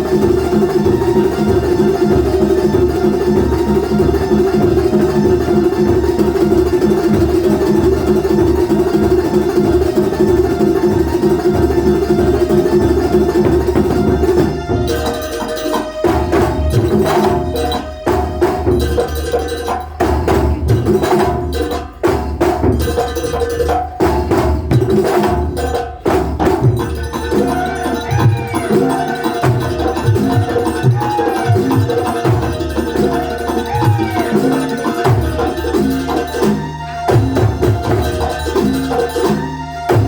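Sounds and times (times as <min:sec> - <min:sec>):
frame drums beating rhythm: 0:00.0 - 0:40.0
melodic line with sliding notes: 0:26.8 - 0:40.0.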